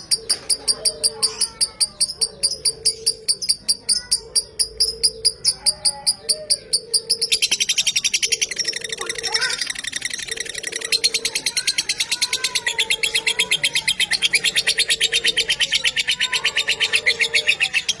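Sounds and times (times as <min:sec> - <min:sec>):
lovebird chattering: 0:00.0 - 0:18.0.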